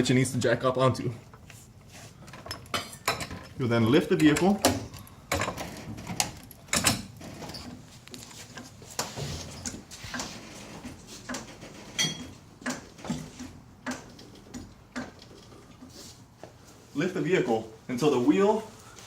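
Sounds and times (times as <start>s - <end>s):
car jack clicking and knocking: 4.2s - 7.2s, 11.3s - 15.4s.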